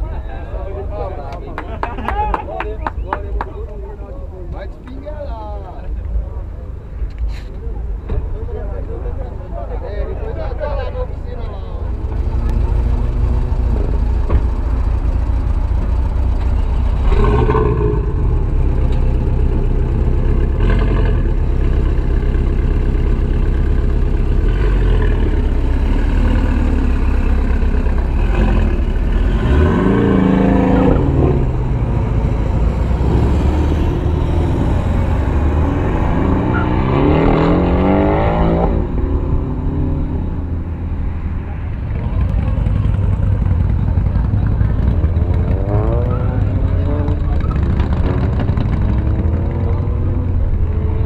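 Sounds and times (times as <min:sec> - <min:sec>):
car engine revving: 0:11.8 - 0:51.0.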